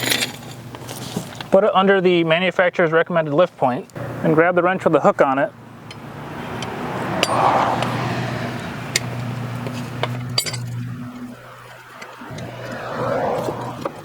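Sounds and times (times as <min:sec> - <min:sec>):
metal tools clinking and scraping: 0:00.0 - 0:01.4, 0:08.6 - 0:12.2
low hum: 0:09.8 - 0:14.0.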